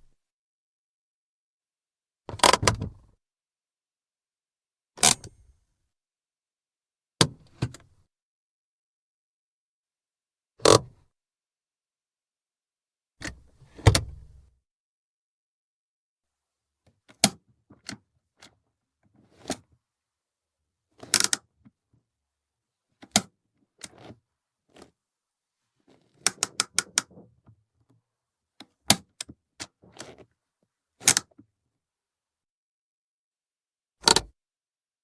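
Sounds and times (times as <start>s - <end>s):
handbrake ratchet clicks and clunks: 21.0s - 21.4s, 23.0s - 24.1s, 31.0s - 31.2s, 34.0s - 34.3s.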